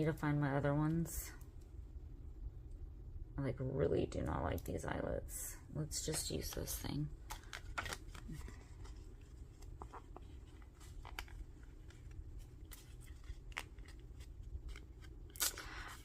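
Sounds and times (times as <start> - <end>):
paper rustling: 6.4 - 16.0.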